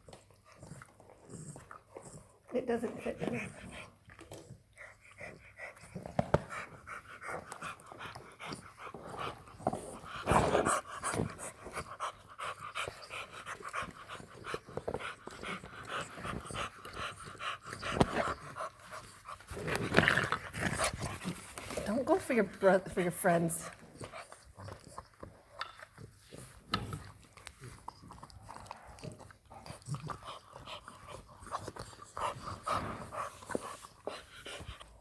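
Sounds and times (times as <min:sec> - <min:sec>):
puppies panting: 0:00.0 - 0:35.0
teeth clicking on chew bones: 0:24.2 - 0:26.1.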